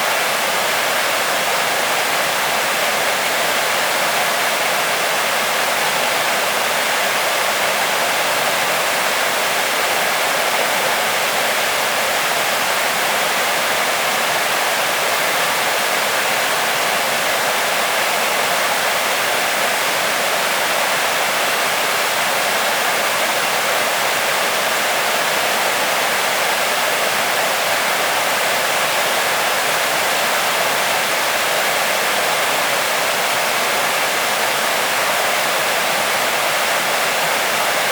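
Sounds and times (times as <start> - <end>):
waterfall rushing: 0.0 - 37.9.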